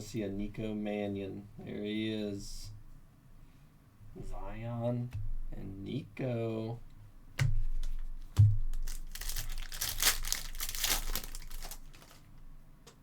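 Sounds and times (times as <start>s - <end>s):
soft thump: 8.4s - 8.8s
foil wrapper crinkling and tearing: 8.7s - 12.3s.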